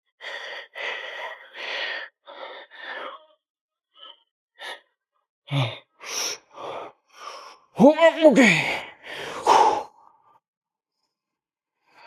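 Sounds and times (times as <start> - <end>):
man breathing hard: 0.2 - 3.2, 8.7 - 10.2.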